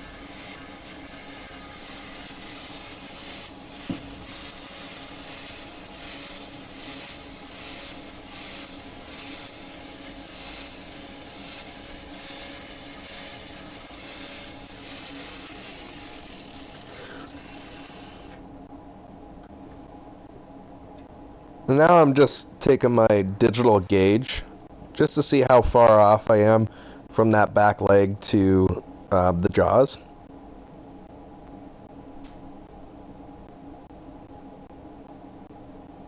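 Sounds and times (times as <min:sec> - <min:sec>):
angle grinder motor: 0:00.0 - 0:18.4
grinding disc scraping steel: 0:00.0 - 0:18.4, 0:23.6 - 0:24.2.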